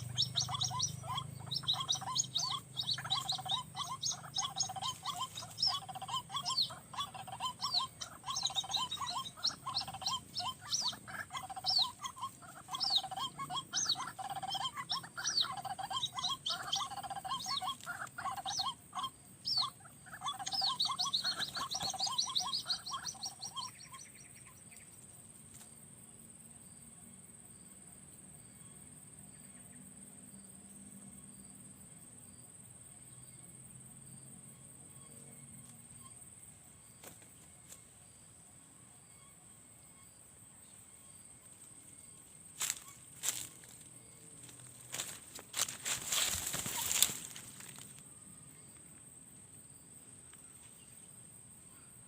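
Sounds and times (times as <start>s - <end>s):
bird calling fast repeated notes: 0.0s - 24.2s
faint high-pitched whine: 0.0s - 52.0s.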